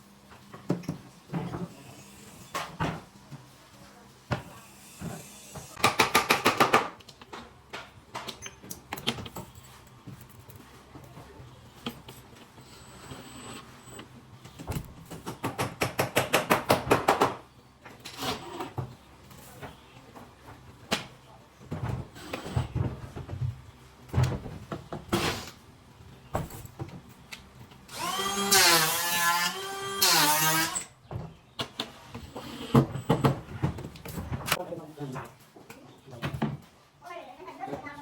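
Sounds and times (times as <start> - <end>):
rapid hammer strikes: 5.8 - 7.0.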